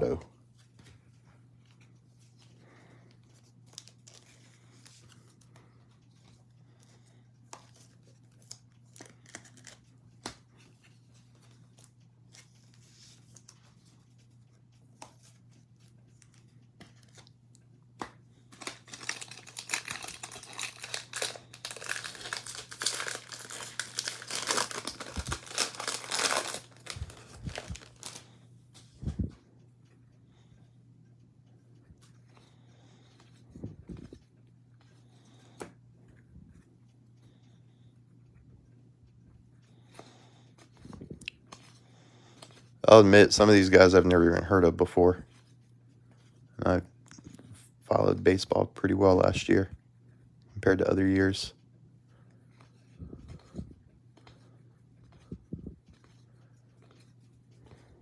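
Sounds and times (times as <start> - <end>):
cards being handled: 0.0 - 29.2, 39.7 - 44.4
low electrical hum: 0.0 - 58.0
foil wrapper crinkling and tearing: 8.4 - 9.9, 18.5 - 28.4.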